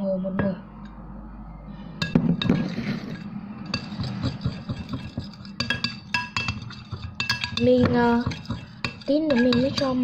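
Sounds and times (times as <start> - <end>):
utensil clinking against a bowl: 2.0 - 10.0.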